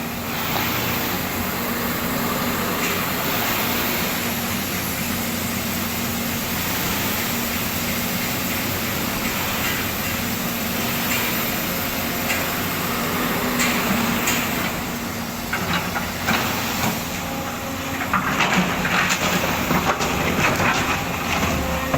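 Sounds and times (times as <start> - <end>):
excavator diesel engine running: 0.0 - 21.9
excavator bucket clanking and scraping: 6.9 - 21.9.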